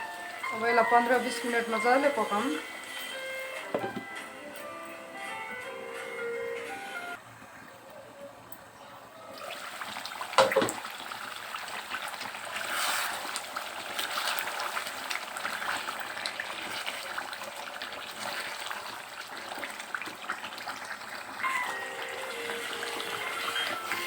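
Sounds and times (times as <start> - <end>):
water running from a tap: 9.4 - 24.0.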